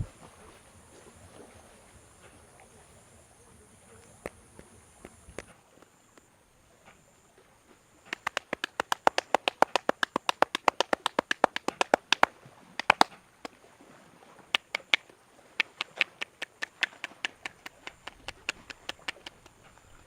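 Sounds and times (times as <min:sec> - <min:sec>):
hands tapping a head: 0:08.1 - 0:13.2, 0:15.7 - 0:19.5.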